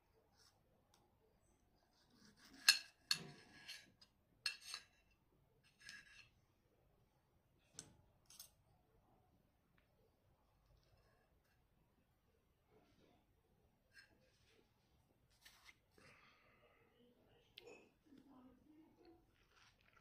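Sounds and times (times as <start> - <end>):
cutlery clinking on crockery: 2.4 - 5.1.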